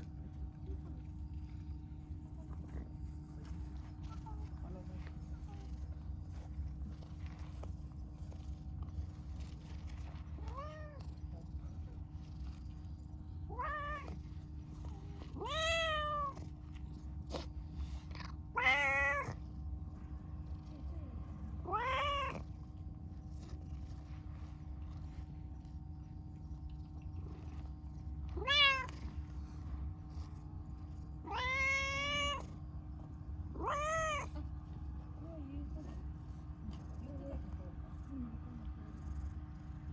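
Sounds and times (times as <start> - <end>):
cat meowing: 10.4 - 11.0, 13.5 - 14.2, 15.3 - 16.4, 18.5 - 19.4, 21.6 - 22.5, 28.4 - 29.0, 31.2 - 32.5, 33.5 - 34.4.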